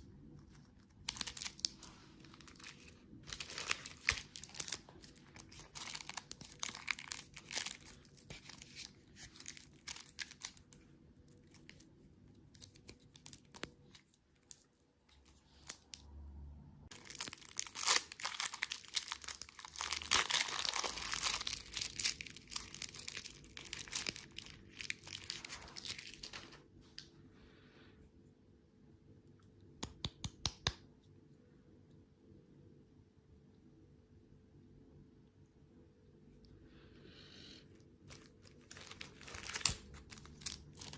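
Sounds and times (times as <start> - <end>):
candy packaging crinkling: 0.2 - 16.0, 16.9 - 26.7, 38.1 - 40.9.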